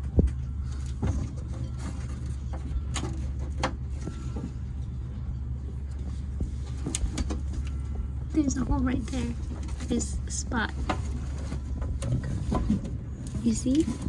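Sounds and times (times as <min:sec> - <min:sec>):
clicks and knocks of wire handling: 0:00.0 - 0:05.0, 0:05.9 - 0:08.1
steady low rumble: 0:00.0 - 0:14.0.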